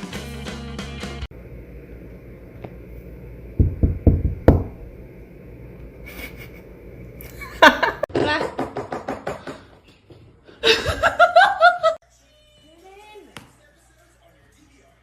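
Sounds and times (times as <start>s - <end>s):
dull knocks: 3.6s - 4.8s.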